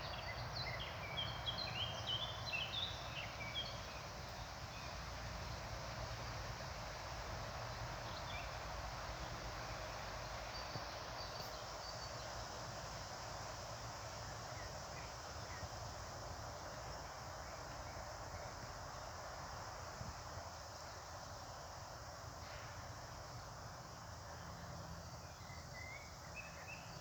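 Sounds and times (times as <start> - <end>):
steady outdoor hiss: 0.0 - 27.0.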